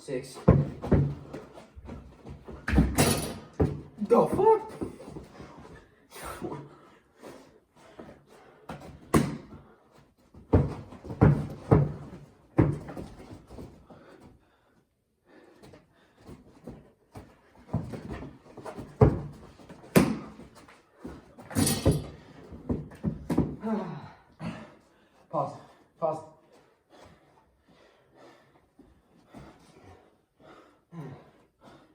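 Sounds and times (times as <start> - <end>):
basketball bouncing on floor: 0.4 - 5.4, 8.7 - 9.7, 10.4 - 13.7, 17.2 - 20.5, 21.5 - 23.6.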